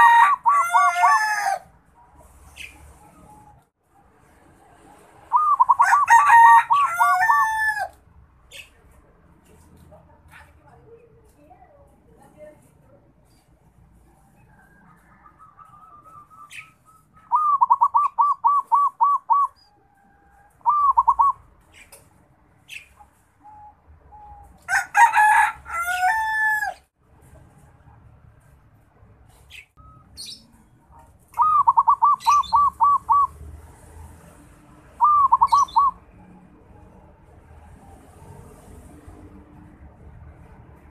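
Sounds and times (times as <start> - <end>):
dove cooing: 5.2 - 7.4, 15.1 - 21.5, 30.2 - 33.5, 35.0 - 36.2
harsh bird call: 5.2 - 7.9, 15.2 - 19.8, 20.6 - 21.9, 31.4 - 33.4, 35.0 - 36.0.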